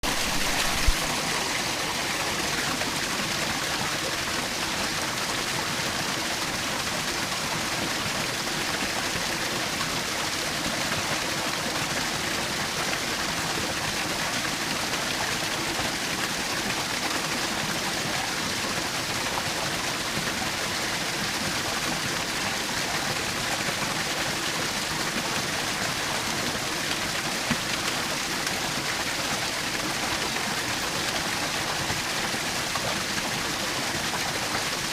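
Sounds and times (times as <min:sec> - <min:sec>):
waterfall splashing: 0:00.0 - 0:34.9.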